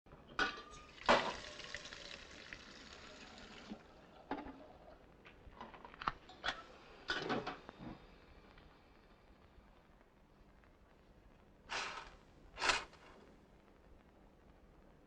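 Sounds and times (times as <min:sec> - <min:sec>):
running water: 0:00.7 - 0:04.6.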